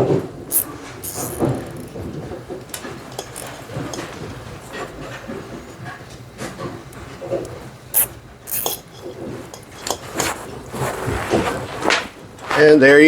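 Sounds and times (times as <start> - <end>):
zip ties rasping tight: 0.5 - 2.0, 3.2 - 3.8, 8.0 - 9.0
hands handling cable and parts: 0.5 - 12.1.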